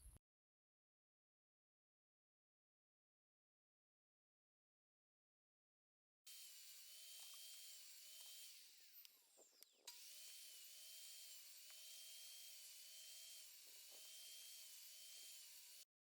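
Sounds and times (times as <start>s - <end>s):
power tool motor whine: 6.3s - 15.9s.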